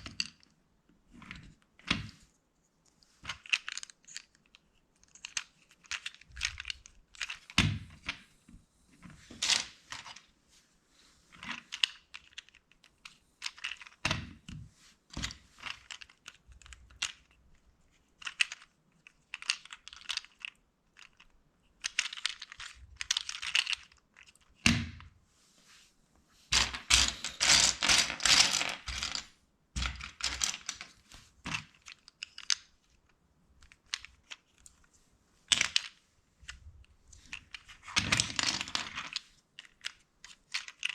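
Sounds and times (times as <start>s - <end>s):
plastic bricks clicking together: 3.2s - 8.2s, 11.4s - 14.4s, 15.2s - 17.4s, 18.0s - 24.7s, 26.6s - 34.8s, 35.5s - 40.9s
plastic bricks clattering: 18.1s - 24.6s, 26.6s - 33.0s, 35.5s - 40.9s.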